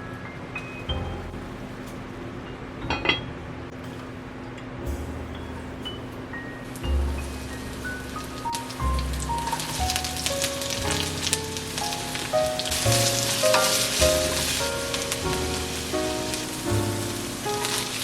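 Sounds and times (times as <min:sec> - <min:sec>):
background music: 0:00.9 - 0:02.3, 0:04.8 - 0:18.0
food sizzling in a hot pan: 0:08.6 - 0:18.0.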